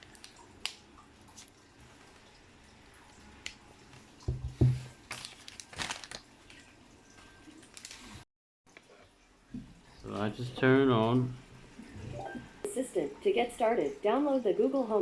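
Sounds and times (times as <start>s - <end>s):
packaging crinkling and rustling: 4.5s - 6.7s, 7.6s - 8.2s.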